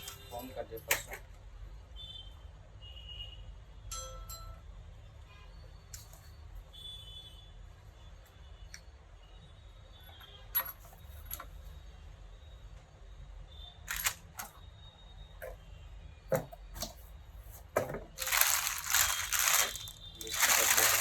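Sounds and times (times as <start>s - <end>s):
packaging rustling: 13.9s - 14.2s, 18.2s - 21.0s.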